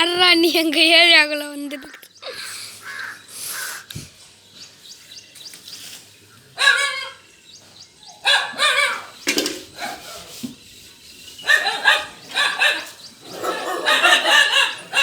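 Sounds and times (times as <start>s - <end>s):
dogs barking: 6.6s - 7.2s, 8.1s - 10.3s, 11.4s - 15.0s.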